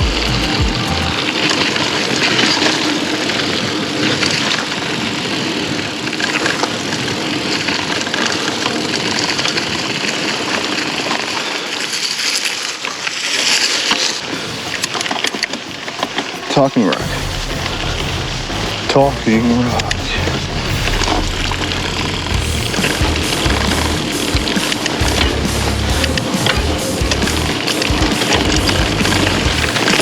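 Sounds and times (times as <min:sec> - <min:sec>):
bike tyres rolling on gravel: 0:01.2 - 0:16.8.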